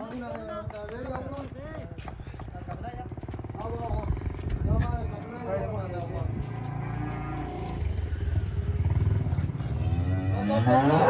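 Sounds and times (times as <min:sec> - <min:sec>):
cow mooing: 0:06.5 - 0:07.8, 0:10.0 - 0:11.0.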